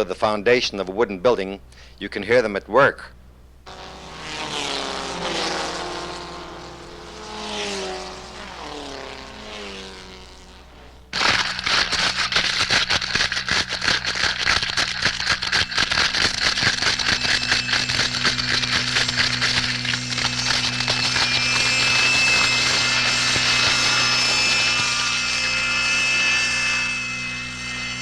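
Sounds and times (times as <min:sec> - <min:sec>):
droning whine sliding in pitch: 0:03.7 - 0:28.0
dense rapid crackling and scratching: 0:11.1 - 0:28.0.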